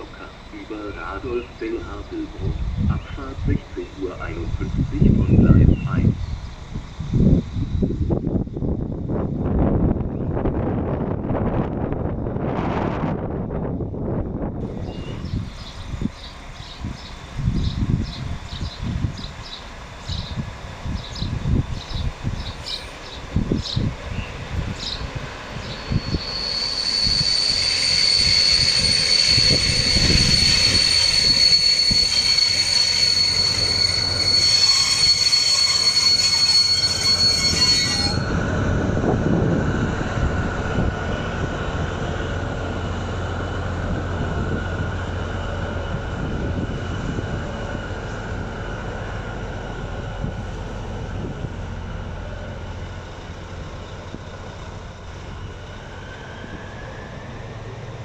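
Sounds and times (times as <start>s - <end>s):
locomotive engine humming: 0.0s - 7.9s, 13.6s - 58.0s
high-pitched train brake squeal: 21.0s - 38.6s.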